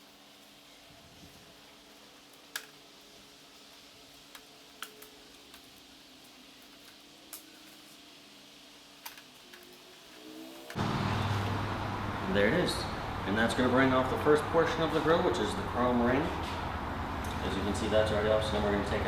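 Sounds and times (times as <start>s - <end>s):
plastic parts handled: 8.8s - 10.2s.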